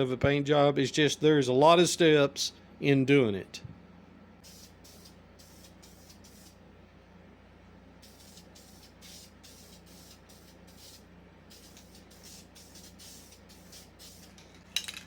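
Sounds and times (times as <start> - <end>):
spray can hissing bursts: 4.4 - 6.6, 8.0 - 14.4.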